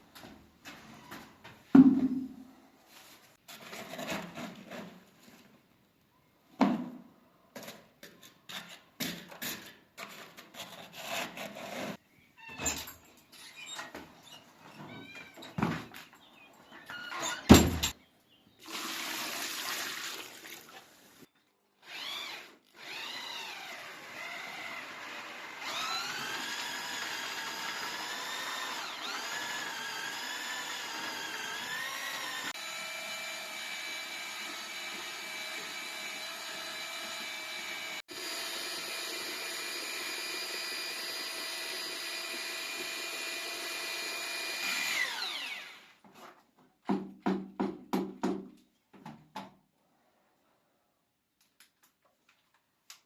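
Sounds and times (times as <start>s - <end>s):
knocks: 1.7s - 2.4s
electric drill mixing adhesive: 21.8s - 46.0s.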